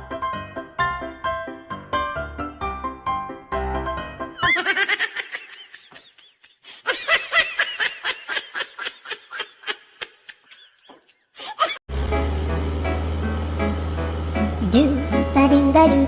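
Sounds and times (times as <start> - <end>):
high-pitched giggling: 4.4 - 11.8.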